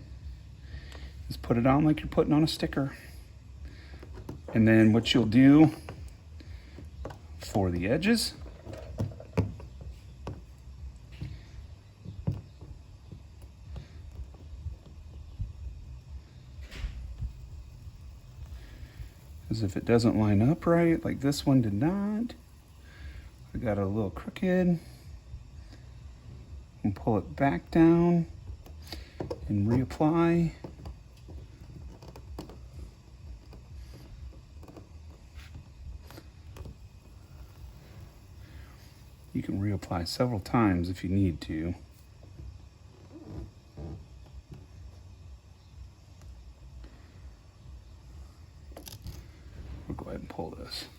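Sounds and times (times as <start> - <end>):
low steady rumble: 0.0 - 50.9
fingers tapping and rubbing film: 3.9 - 17.6, 27.7 - 39.3.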